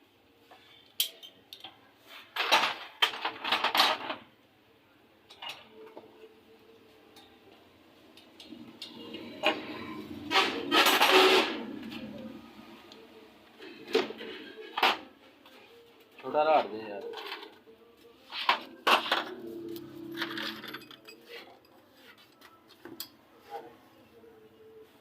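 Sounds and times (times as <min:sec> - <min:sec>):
metal tools clattering: 0:18.5 - 0:21.8.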